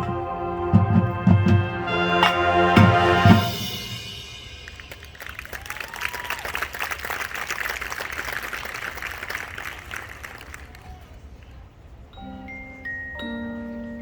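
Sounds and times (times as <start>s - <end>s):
marching band brass and percussion: 0.0s - 6.3s
whistle or cheer: 4.6s - 6.8s
audience applauding: 4.7s - 11.3s.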